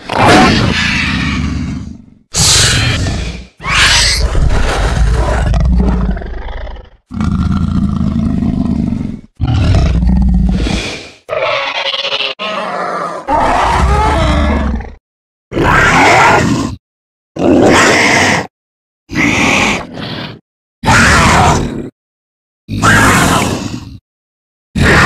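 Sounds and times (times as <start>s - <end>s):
monster roars and growls: 0.0s - 16.8s, 17.4s - 18.5s, 19.1s - 22.0s, 22.7s - 24.0s, 24.8s - 25.0s.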